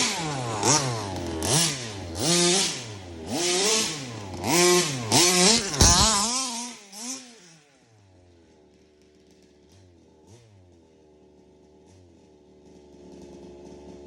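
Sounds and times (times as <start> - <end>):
small two-stroke engine revving: 0.0 - 14.0.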